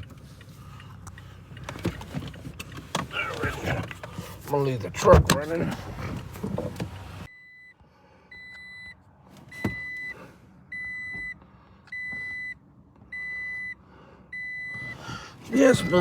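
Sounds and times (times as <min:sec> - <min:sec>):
car warning chime beeping: 0:07.2 - 0:16.0.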